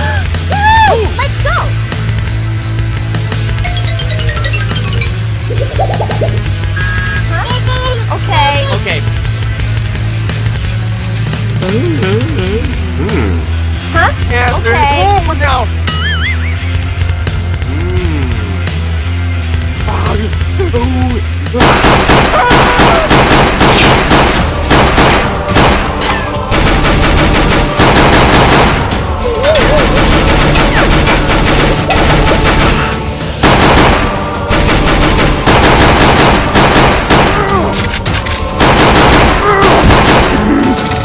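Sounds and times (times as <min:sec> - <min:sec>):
music: 0:00.0 - 0:41.0
automatic gunfire: 0:21.6 - 0:25.9, 0:26.5 - 0:29.0, 0:29.7 - 0:37.5, 0:38.6 - 0:40.5.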